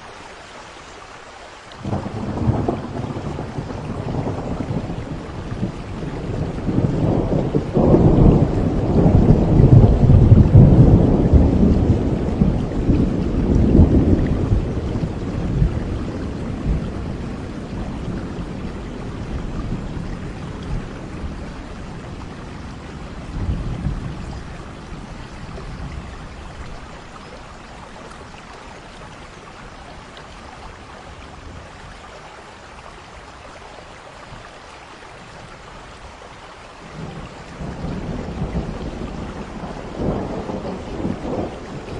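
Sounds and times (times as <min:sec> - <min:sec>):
steady rain: 0:00.0 - 0:41.9
thunder rumbling: 0:01.8 - 0:29.3, 0:36.9 - 0:41.9.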